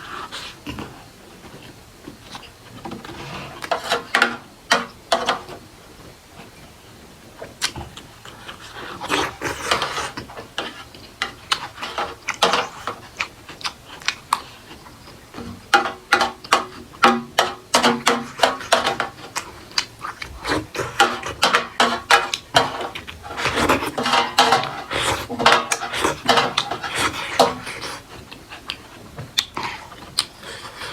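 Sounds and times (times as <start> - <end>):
chewing and lip-smacking: 7.5 - 15.3, 18.3 - 30.9
mouth noises: 19.3 - 30.9.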